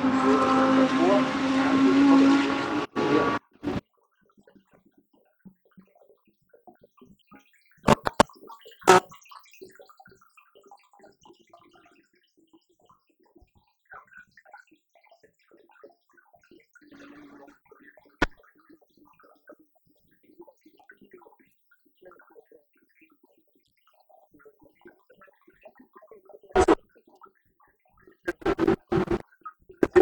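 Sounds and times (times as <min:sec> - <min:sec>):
race car engine running: 0:00.0 - 0:03.8, 0:26.6 - 0:26.8, 0:28.3 - 0:29.2
sharp clicks: 0:07.9 - 0:08.3, 0:26.6 - 0:26.8, 0:28.3 - 0:29.2.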